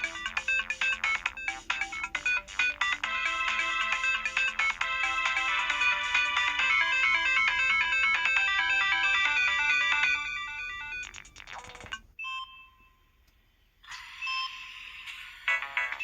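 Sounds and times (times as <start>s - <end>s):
phone ringtone melodies: 0.0s - 12.6s.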